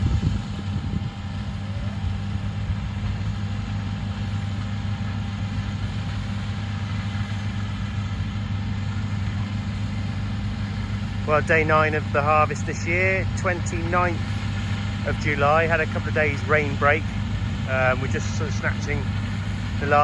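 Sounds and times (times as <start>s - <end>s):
combine harvester engine droning: 0.0s - 20.0s.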